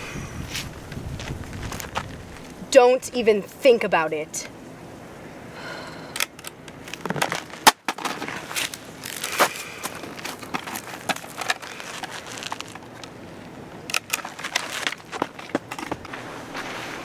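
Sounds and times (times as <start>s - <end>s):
rustling and crackling: 0.0s - 2.8s, 6.4s - 17.0s.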